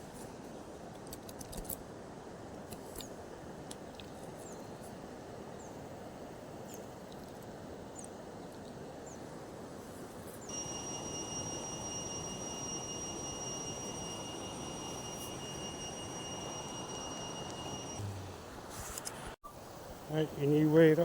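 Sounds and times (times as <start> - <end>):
thin high whine: 10.4 - 21.0.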